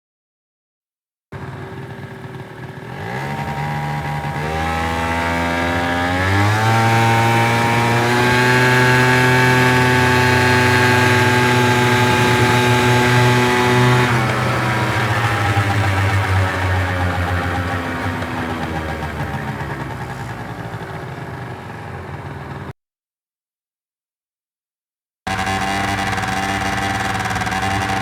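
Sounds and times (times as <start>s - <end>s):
motor scooter engine running: 1.4s - 22.7s, 25.3s - 28.0s.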